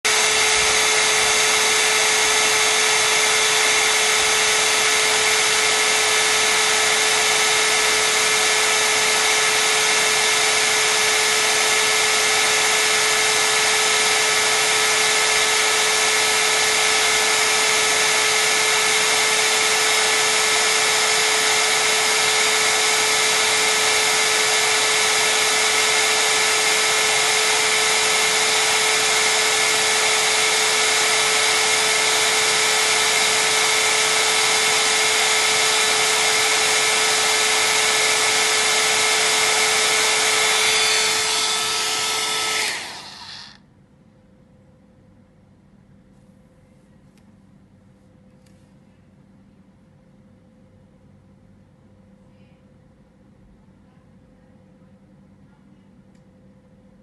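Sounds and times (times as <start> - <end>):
blower motor whirring: 0.0 - 43.6.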